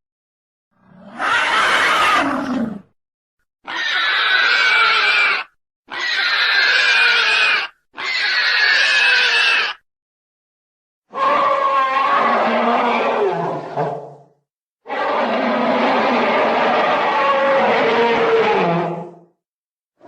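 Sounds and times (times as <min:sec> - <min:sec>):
dinosaur roars: 0:00.8 - 0:03.0, 0:11.1 - 0:19.3.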